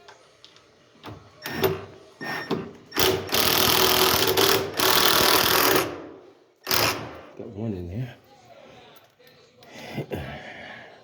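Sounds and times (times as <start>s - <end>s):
drill driving a screw: 1.4s - 7.2s.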